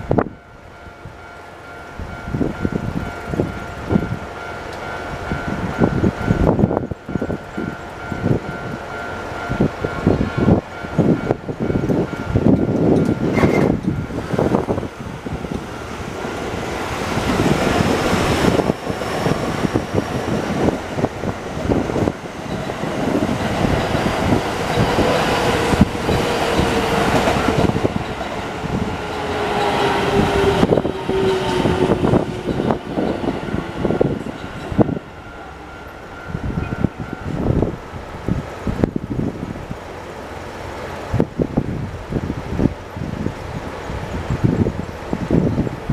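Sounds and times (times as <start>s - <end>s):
train rumble: 0.0s - 45.9s
wheel clacks over rail joints: 11.8s - 35.0s.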